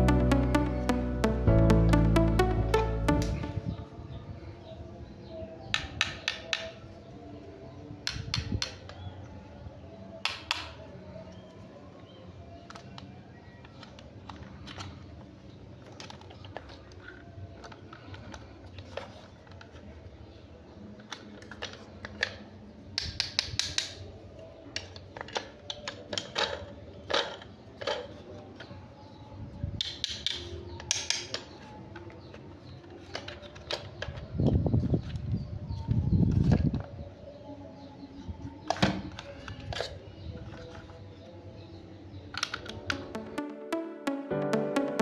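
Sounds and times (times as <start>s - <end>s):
plastic toy clicks: 23.0s - 24.0s, 29.8s - 31.5s.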